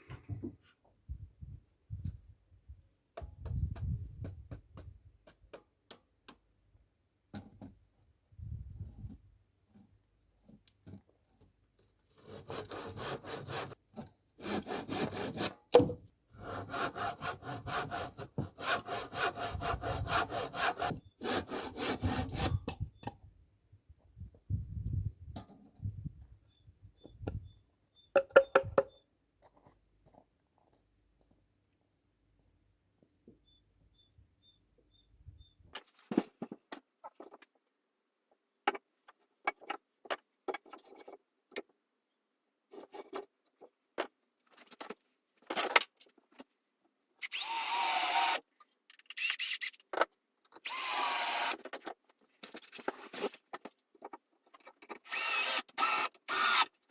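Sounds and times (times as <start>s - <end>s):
hand sawing wood: 12.1s - 13.8s, 14.4s - 22.7s.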